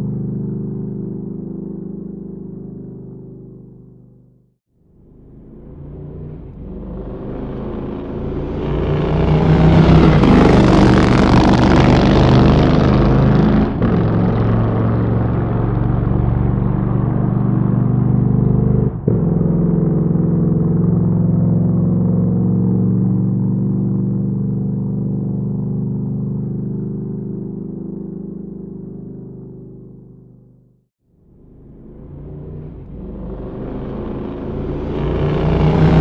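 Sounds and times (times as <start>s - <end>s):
motorcycle engine running: 0.0s - 36.0s.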